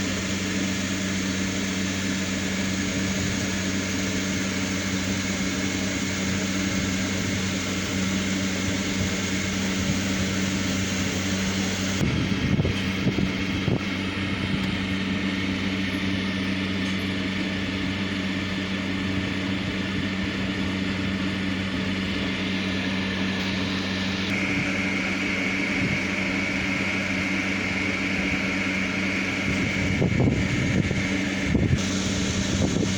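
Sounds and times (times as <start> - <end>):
low hum: 0.0 - 32.9
hiss: 31.8 - 32.9.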